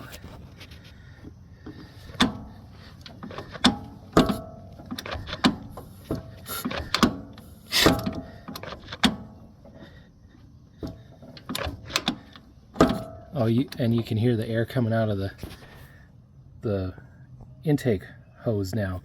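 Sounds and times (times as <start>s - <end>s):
air puffing from intake hose: 0.0s - 9.9s
engine mechanical clanks and clicks: 0.0s - 15.7s.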